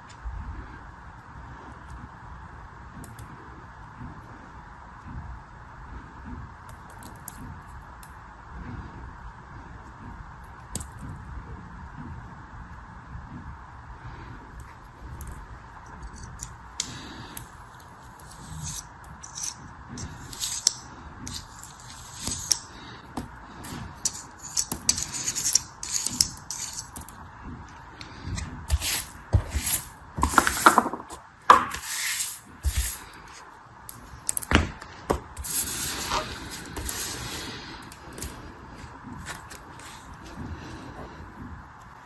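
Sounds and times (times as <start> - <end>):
steady background hiss: 0.0 - 42.0.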